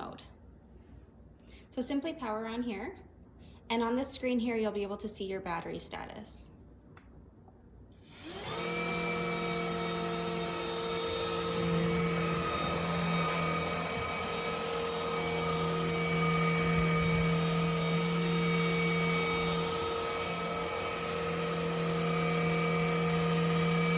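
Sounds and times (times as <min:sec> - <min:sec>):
vacuum motor whining: 0:08.0 - 0:23.9.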